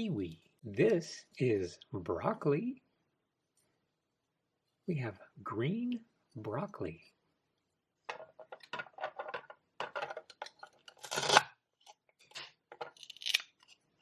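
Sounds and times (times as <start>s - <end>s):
velcro ripping: 11.0s - 11.5s.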